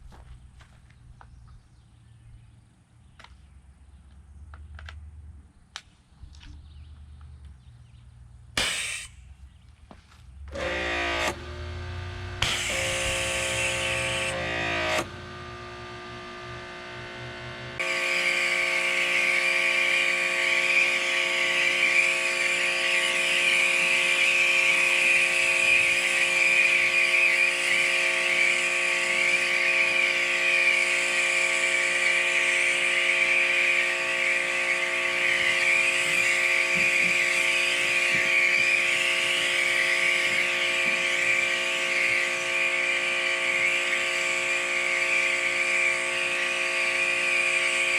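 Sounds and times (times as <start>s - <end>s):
water jet hissing: 8.6s - 9.2s, 17.8s - 47.9s
pressure washer motor whine: 10.5s - 47.9s.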